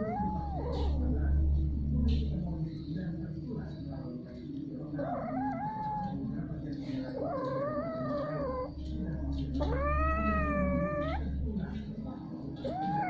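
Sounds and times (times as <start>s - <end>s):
cat yowling: 0.0s - 1.0s, 5.0s - 6.2s, 7.1s - 8.8s, 9.6s - 11.4s, 12.6s - 13.0s.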